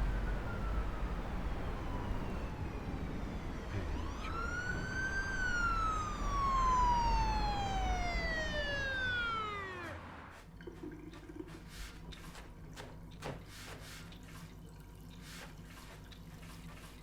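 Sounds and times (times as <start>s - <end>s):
emergency siren wailing: 0.0s - 10.4s
low traffic rumble: 0.0s - 10.4s.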